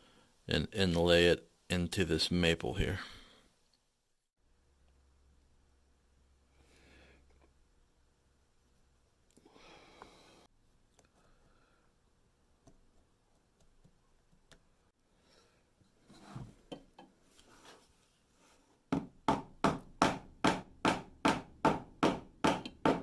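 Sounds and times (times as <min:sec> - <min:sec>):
faint scraping and handling: 0:15.8 - 0:18.8.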